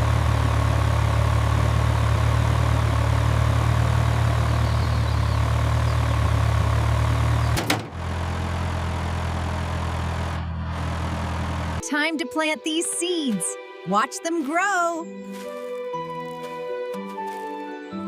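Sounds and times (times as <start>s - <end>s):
engine running with deep hum: 0.0s - 11.9s.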